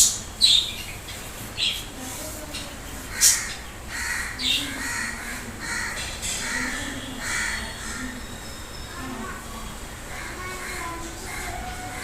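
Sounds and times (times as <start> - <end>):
crow cawing: 3.1 - 8.2.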